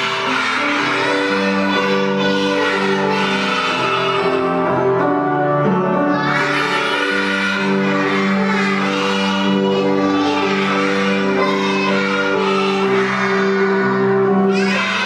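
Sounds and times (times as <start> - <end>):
young children singing: 0.0 - 5.1, 5.9 - 15.0.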